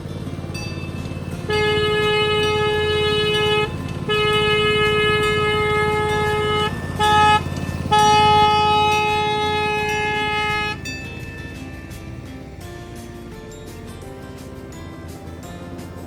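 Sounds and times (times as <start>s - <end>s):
low rumble of running train: 0.0s - 16.0s
train horn blasts: 1.4s - 11.2s.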